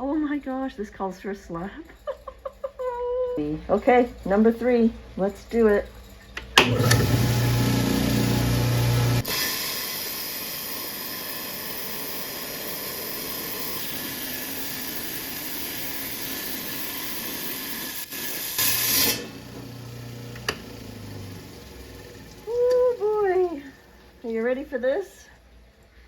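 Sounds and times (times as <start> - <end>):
saw motor hum: 6.4 - 24.5
diamond blade hissing through stone: 9.2 - 19.4.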